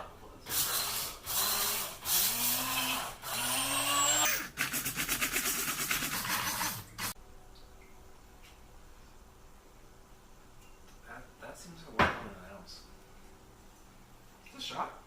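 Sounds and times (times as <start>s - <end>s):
blender motor blending: 0.5s - 7.2s.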